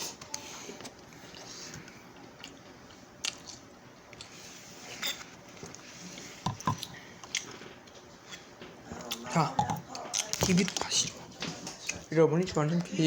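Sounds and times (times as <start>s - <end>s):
person chewing noodles: 0.7s - 4.6s, 5.7s - 8.4s.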